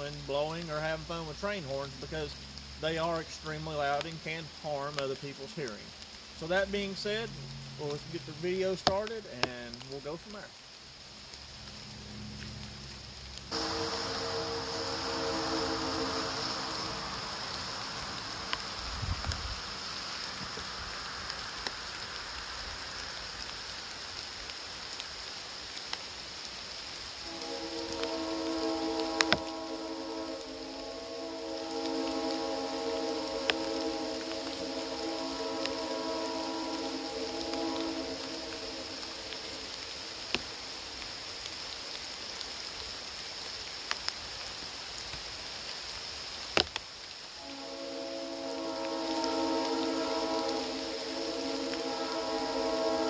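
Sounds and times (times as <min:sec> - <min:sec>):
light rain falling: 0:00.0 - 0:53.0
low rumble: 0:11.5 - 0:21.4, 0:27.2 - 0:41.0.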